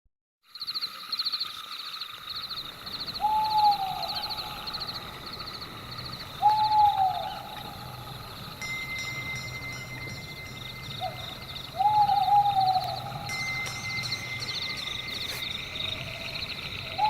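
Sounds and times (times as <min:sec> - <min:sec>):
insects chirping: 0:00.4 - 0:17.0
steady insect hum: 0:00.4 - 0:17.0
owl hooting: 0:03.1 - 0:08.4, 0:10.9 - 0:13.4, 0:15.0 - 0:17.0.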